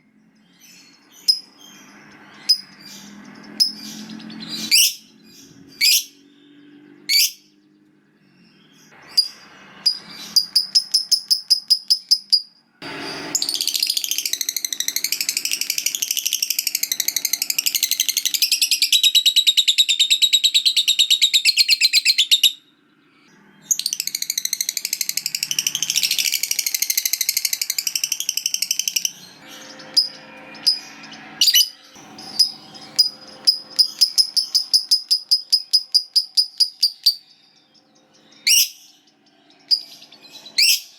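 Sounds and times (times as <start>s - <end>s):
bird chattering trill: 9.0s - 12.5s, 13.3s - 22.6s, 23.7s - 37.4s, 38.4s - 38.8s.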